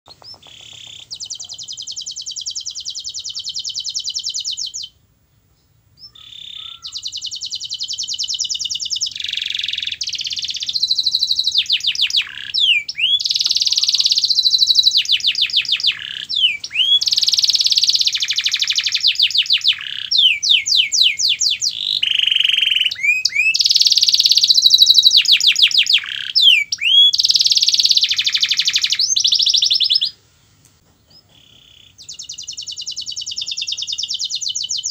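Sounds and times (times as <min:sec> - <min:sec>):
canary singing trills: 0:00.1 - 0:05.0, 0:05.6 - 0:30.2, 0:30.8 - 0:34.9.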